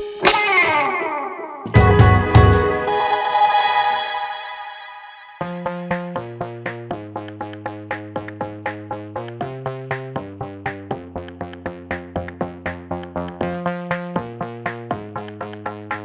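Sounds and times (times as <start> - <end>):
electronic music with synthesizer: 1.7 - 9.6.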